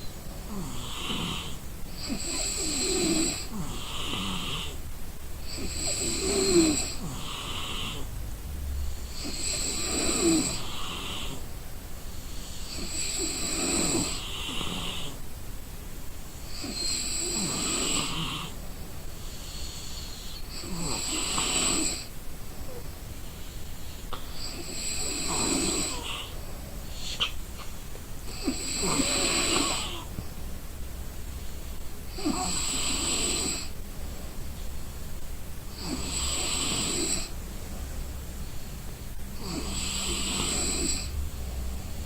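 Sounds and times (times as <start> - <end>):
person snoring: 0.5 - 4.8, 5.5 - 8.1, 8.9 - 11.4, 12.6 - 15.2, 16.5 - 18.6, 19.5 - 22.1, 24.4 - 27.3, 28.3 - 30.1, 32.1 - 33.7, 35.7 - 37.4, 39.4 - 41.4.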